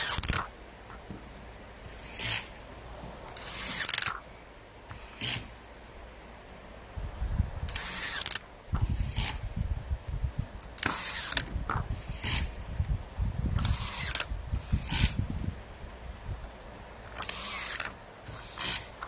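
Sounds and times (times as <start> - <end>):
tool ratcheting rattles: 3.4 - 4.2, 7.7 - 8.4, 17.1 - 19.0.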